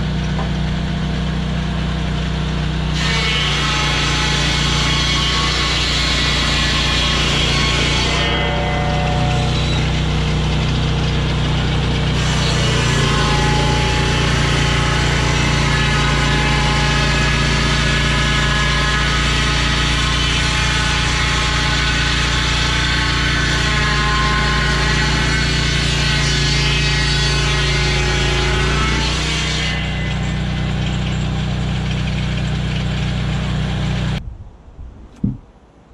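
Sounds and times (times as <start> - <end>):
engine running steadily: 0.0 - 3.0, 9.2 - 12.7, 30.1 - 34.2.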